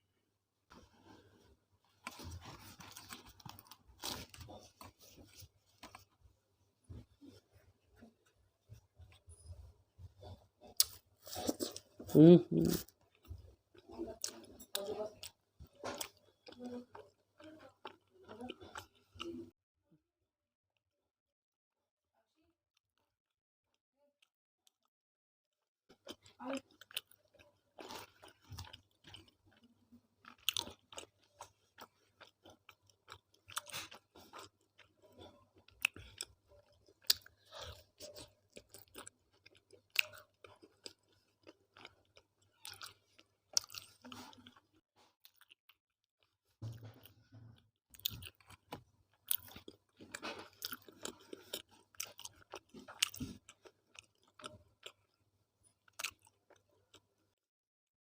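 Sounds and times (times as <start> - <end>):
chewing with mouth clicks: 7.2 - 19.4, 25.9 - 47.2, 47.9 - 57.1.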